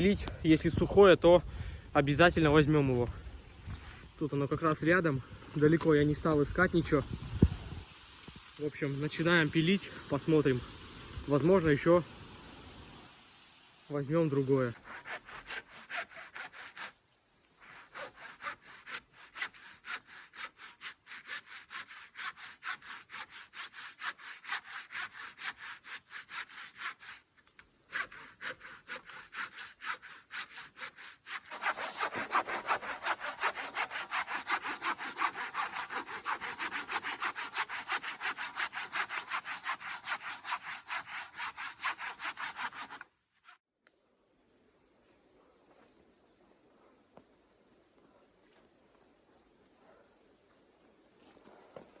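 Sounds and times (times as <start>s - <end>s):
hand saw cutting wood: 14.2s - 17.0s, 17.6s - 43.6s.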